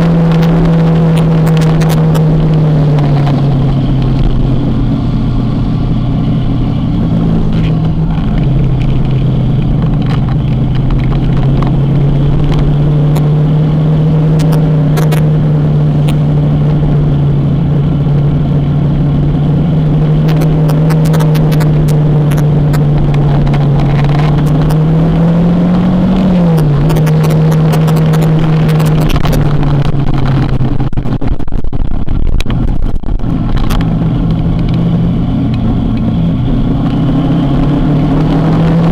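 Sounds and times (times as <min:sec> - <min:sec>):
motorcycle engine running: 0:00.0 - 0:38.9.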